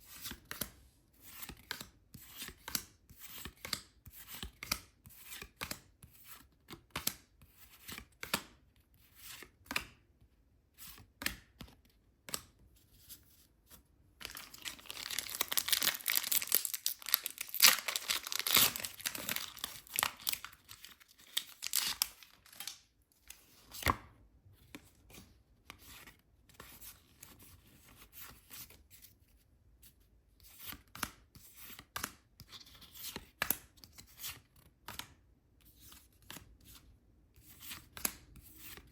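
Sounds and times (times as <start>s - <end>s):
packaging crinkling: 14.2s - 22.8s
wrapping tearing: 14.2s - 22.8s.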